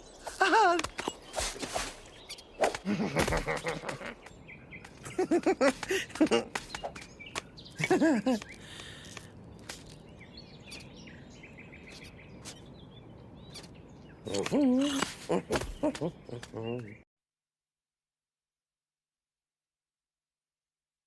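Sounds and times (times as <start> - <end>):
faint chirping: 0.9 - 2.9
person making wordless vocal sounds: 14.3 - 17.0.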